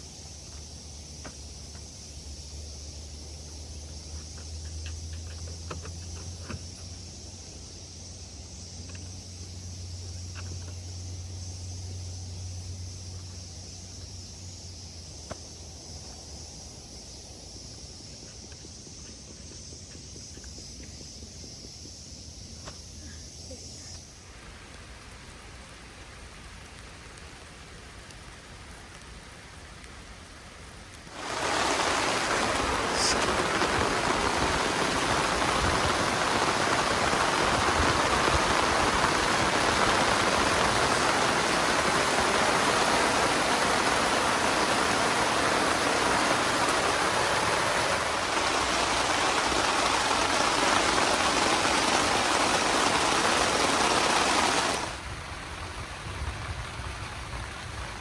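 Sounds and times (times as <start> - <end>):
faint steady hiss: 0.0 - 58.0
water rushing: 31.0 - 56.4.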